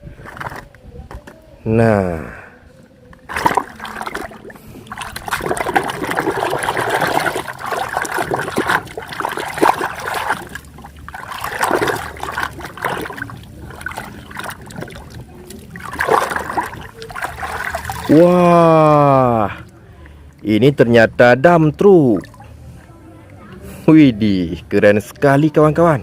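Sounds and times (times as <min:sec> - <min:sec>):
water running and splashing: 0:03.3 - 0:19.5.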